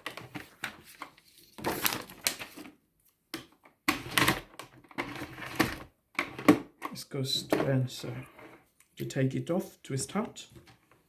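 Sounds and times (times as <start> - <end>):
plastic parts clicking and clattering: 0.0 - 8.0.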